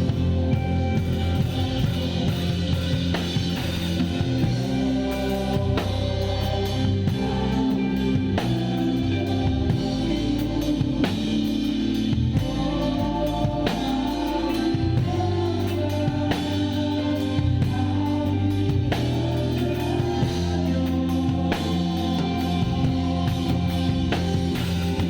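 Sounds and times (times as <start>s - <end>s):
live band playing worship song: 0.0s - 25.0s
people singing: 0.0s - 25.0s.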